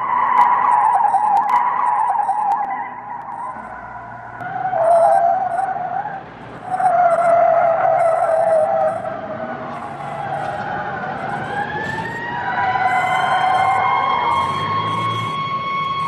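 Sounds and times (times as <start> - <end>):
car tyres screeching: 0.0 - 16.0
police siren: 0.0 - 16.0.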